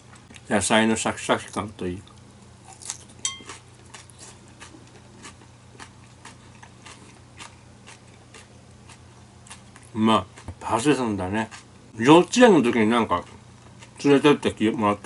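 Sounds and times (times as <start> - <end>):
person chewing crunchy food: 2.1 - 10.8, 13.2 - 14.1
tableware clink: 3.2 - 3.6.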